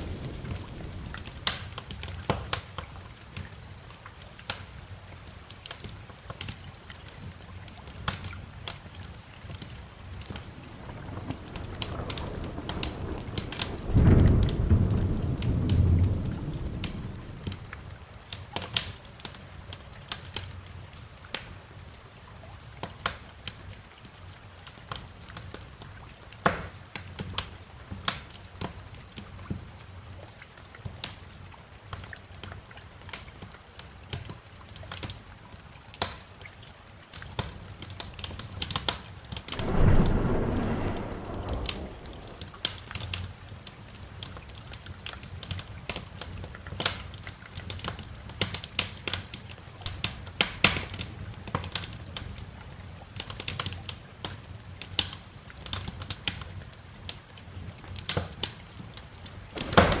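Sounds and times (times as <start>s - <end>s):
thunder rumbling: 0.0s - 2.6s, 9.6s - 18.0s, 39.5s - 43.2s, 59.4s - 60.0s
wood fire crackling: 0.0s - 4.8s, 5.6s - 21.5s, 37.2s - 52.5s, 53.1s - 60.0s
steady rain: 0.0s - 60.0s.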